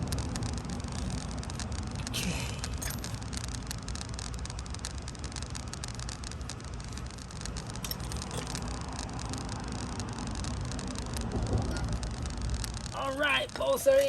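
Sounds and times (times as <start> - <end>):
metallic clicks of brake parts: 0.0 - 4.0
low rumble: 0.0 - 13.0.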